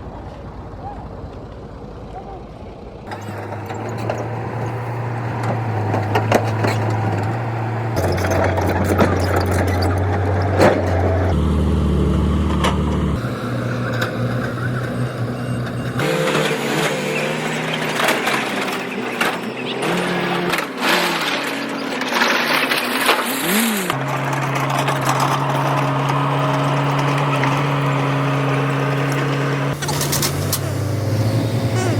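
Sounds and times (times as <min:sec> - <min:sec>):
heavy diesel engine hum: 0:00.0 - 0:31.9
metallic clanks and knocks: 0:03.1 - 0:11.3.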